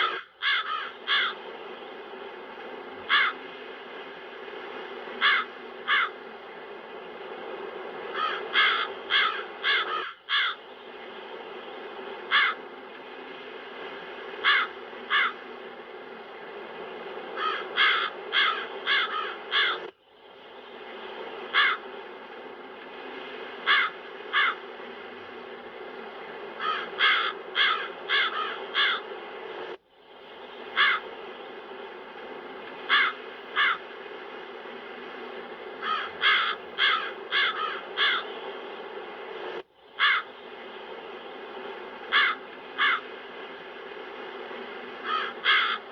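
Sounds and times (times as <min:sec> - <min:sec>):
crows cawing: 0:00.0 - 0:01.4, 0:03.1 - 0:03.4, 0:05.2 - 0:06.2, 0:08.1 - 0:10.6, 0:12.3 - 0:12.6, 0:14.4 - 0:15.4, 0:17.4 - 0:19.9, 0:21.5 - 0:21.8, 0:23.6 - 0:24.6, 0:26.6 - 0:29.1, 0:30.8 - 0:31.1, 0:32.9 - 0:33.9, 0:35.8 - 0:38.4, 0:40.0 - 0:40.3, 0:42.1 - 0:43.1, 0:45.0 - 0:45.9.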